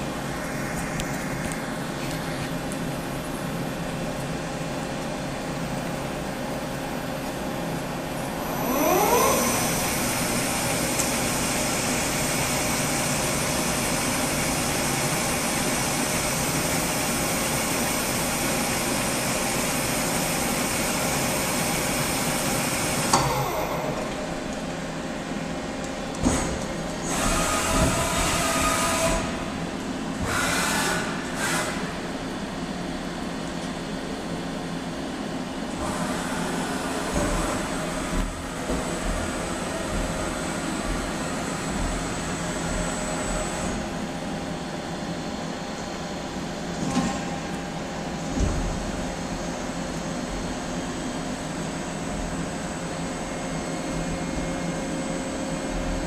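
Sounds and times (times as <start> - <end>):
lathe machine running with whine: 0.0 - 25.8, 27.0 - 46.8
falling machine whine: 8.2 - 12.1, 22.9 - 24.6
short bursts of machine noise: 8.4 - 10.3.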